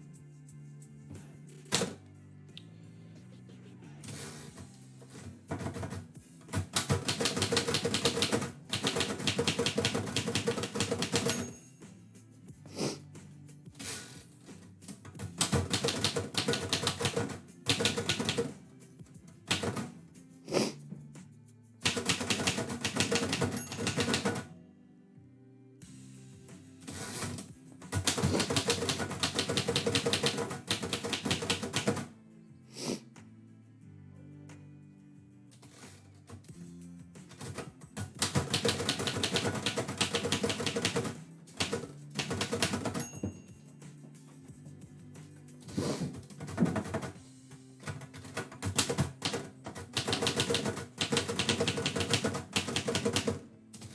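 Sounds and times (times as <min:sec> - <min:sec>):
background music: 0:00.0 - 0:53.9
typewriter typing: 0:05.2 - 0:11.5, 0:14.9 - 0:18.6, 0:19.5 - 0:19.9, 0:21.8 - 0:24.5, 0:26.8 - 0:32.1, 0:37.3 - 0:43.2, 0:45.7 - 0:47.2, 0:47.8 - 0:53.9.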